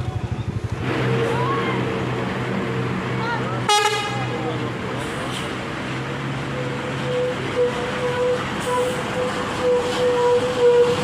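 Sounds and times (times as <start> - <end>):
bus air horn long note: 3.7 - 4.3, 6.6 - 11.0.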